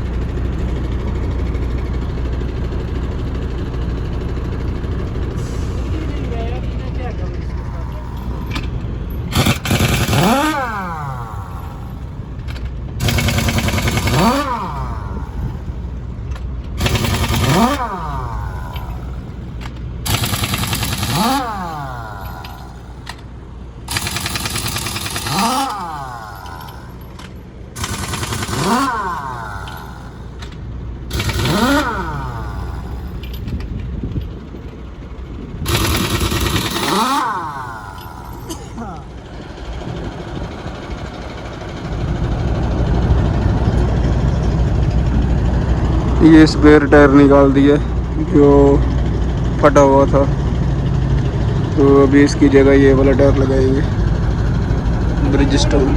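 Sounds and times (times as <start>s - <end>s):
wheel nut spinning whine: 0.0s - 55.9s
pneumatic impact wrench hammering: 7.5s - 34.8s, 35.6s - 39.3s.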